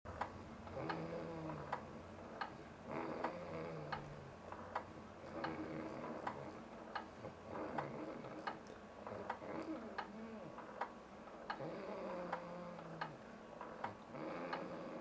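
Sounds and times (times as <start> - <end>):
man snoring: 0.7 - 1.8, 2.9 - 4.3, 5.3 - 6.6, 7.5 - 8.6, 11.6 - 13.1, 14.1 - 15.0.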